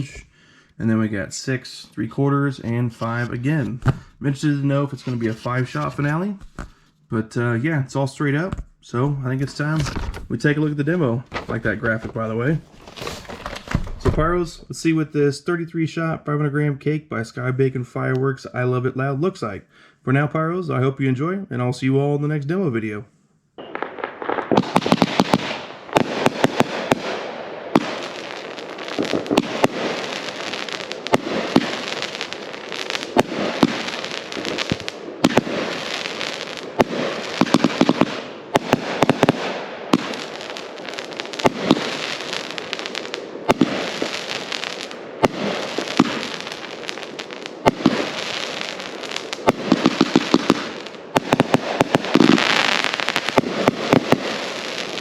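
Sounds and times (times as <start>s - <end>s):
firework aerial bursts: 2.7s - 6.7s, 23.6s - 55.0s
firework crackling: 2.8s - 6.6s, 23.6s - 55.0s
firework launch thumps: 3.0s - 4.2s, 11.3s - 14.7s, 29.0s - 30.0s, 31.1s - 32.3s, 33.1s - 36.1s, 45.2s - 47.0s, 49.1s - 54.4s.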